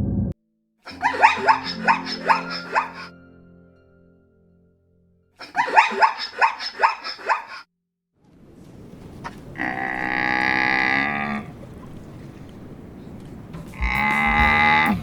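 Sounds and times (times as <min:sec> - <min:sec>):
dog yelping barks: 0:05.4 - 0:07.6
animal long drawn-out call: 0:09.6 - 0:11.6.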